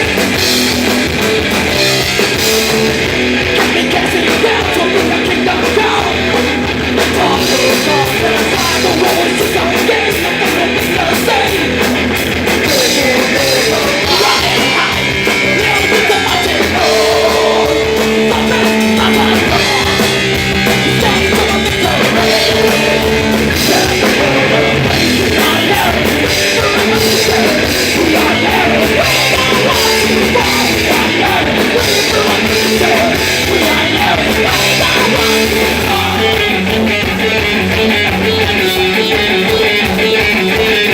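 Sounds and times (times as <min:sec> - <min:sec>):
punk rock band playing live: 0:00.0 - 0:40.9.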